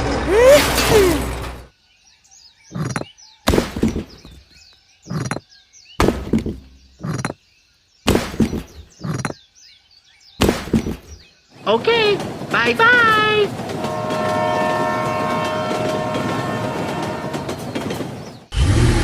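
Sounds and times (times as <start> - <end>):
birds chirping faintly: 1.6 - 18.5
short thuds: 6.0 - 7.4, 8.1 - 9.4, 10.4 - 11.2.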